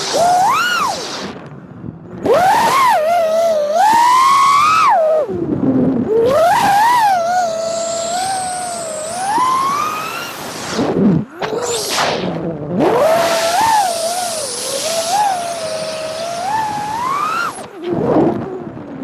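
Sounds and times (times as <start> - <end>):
quadcopter motors whining: 0.0 - 1.4, 2.2 - 18.8.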